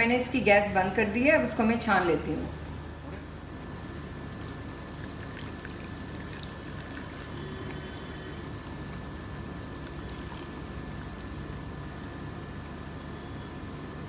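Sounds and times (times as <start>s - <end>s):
faint steady hum: 0.0s - 14.0s
liquid trickling through strainer: 4.3s - 14.0s.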